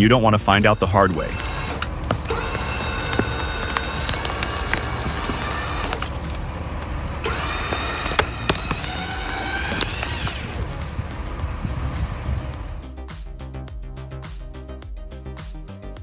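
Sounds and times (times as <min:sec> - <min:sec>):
chainsaw revving: 0:00.7 - 0:10.7
wood splintering cracks: 0:01.1 - 0:10.8.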